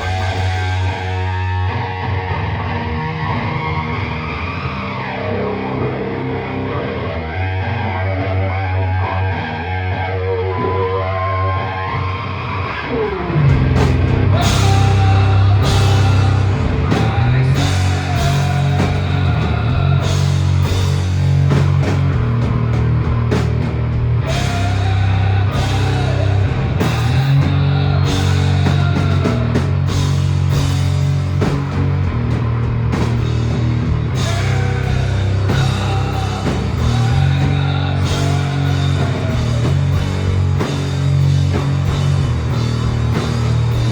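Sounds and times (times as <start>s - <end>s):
drum kit: 0.0s - 1.8s, 13.3s - 43.9s
distorted electric guitar: 0.0s - 43.9s
heavy bass: 0.0s - 43.9s
rock band playing: 0.0s - 43.9s.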